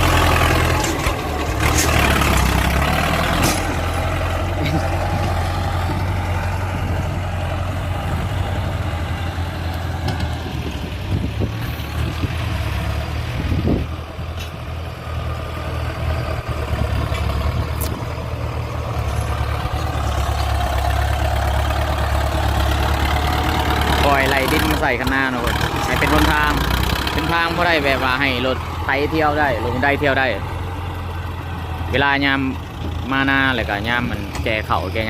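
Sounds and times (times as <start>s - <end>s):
tractor diesel engine running: 0.0s - 35.0s.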